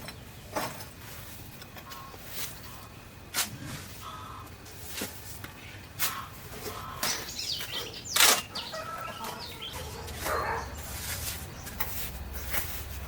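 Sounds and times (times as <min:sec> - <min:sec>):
birds chirping: 0:01.7 - 0:03.2, 0:04.0 - 0:04.6, 0:05.4 - 0:12.5.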